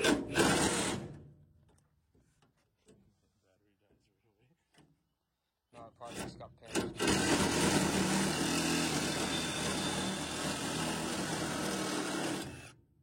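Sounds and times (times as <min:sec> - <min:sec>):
reciprocating saw cutting steel: 0:00.0 - 0:01.1, 0:06.0 - 0:12.7.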